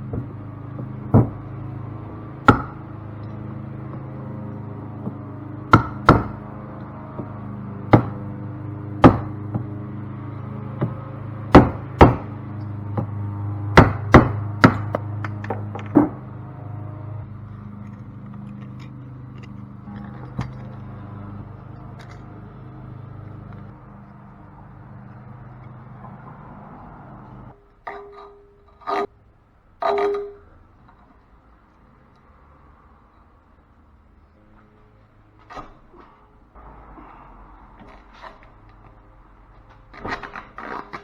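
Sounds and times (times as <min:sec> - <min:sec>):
steady low hum: 0:00.0 - 0:30.6
hammer striking metal: 0:02.4 - 0:04.1, 0:05.0 - 0:08.3, 0:09.0 - 0:09.8, 0:10.7 - 0:16.4, 0:29.8 - 0:30.6.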